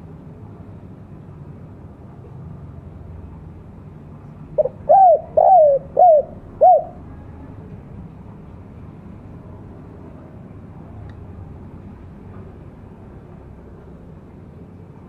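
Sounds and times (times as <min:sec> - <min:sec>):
dove cooing: 0:04.6 - 0:07.1.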